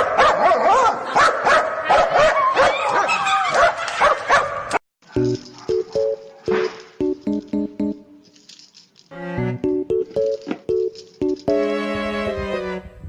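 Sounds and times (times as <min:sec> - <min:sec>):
dog barking and yipping: 0:00.0 - 0:06.9
keyboard tune: 0:05.2 - 0:08.4, 0:09.1 - 0:12.8.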